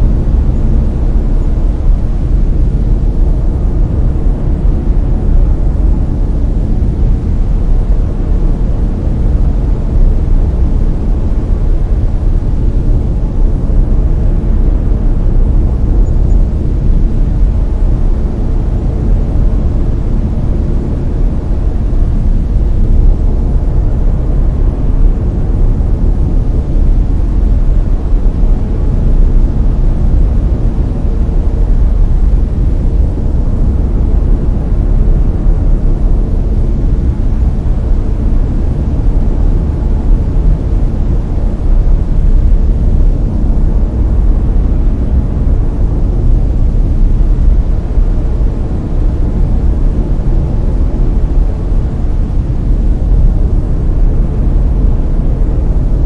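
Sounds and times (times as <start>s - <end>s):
deep brown noise hiss: 0.0s - 56.0s.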